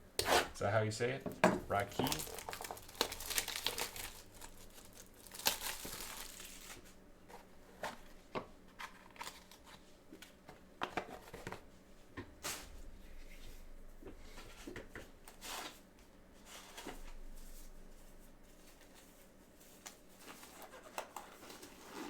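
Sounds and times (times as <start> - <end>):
cellophane crinkling and tearing: 1.7 - 7.0, 8.8 - 9.8.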